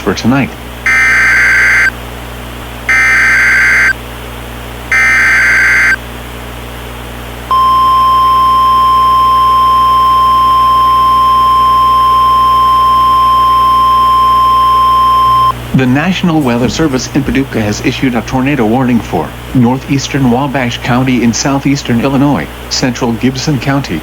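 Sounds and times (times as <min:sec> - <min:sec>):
steady alarm tone: 0:00.8 - 0:01.9, 0:02.9 - 0:04.0, 0:04.9 - 0:06.0, 0:07.5 - 0:15.6
digital data bursts: 0:00.9 - 0:01.9, 0:02.9 - 0:04.0, 0:04.9 - 0:06.0.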